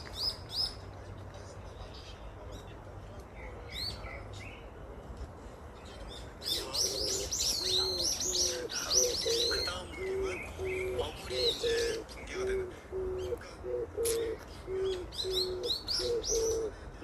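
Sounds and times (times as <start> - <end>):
small birds chirping: 0.0 - 17.0
dove cooing: 6.5 - 16.8.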